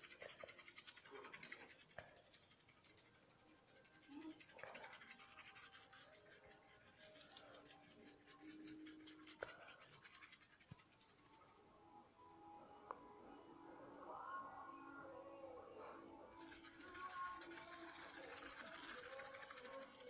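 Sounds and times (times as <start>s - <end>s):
fast scratchy brushing strokes: 0.0s - 11.5s, 16.3s - 20.0s.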